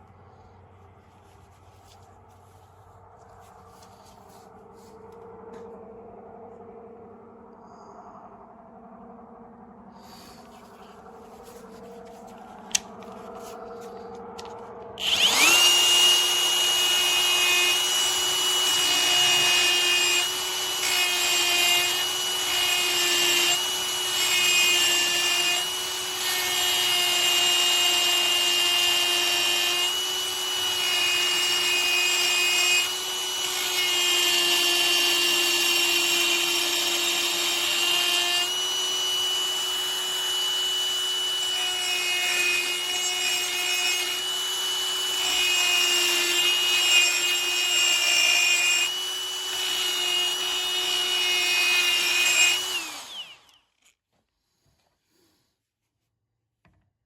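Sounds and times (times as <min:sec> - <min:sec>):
grinder whine: 0:10.0 - 0:54.0
grinding wheel rasping on metal: 0:14.4 - 0:53.5.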